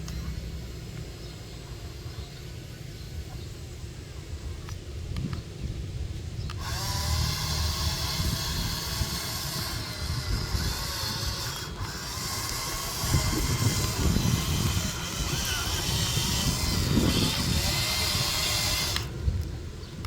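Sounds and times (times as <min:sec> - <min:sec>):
toy motor and gears whirring: 0:06.5 - 0:19.5.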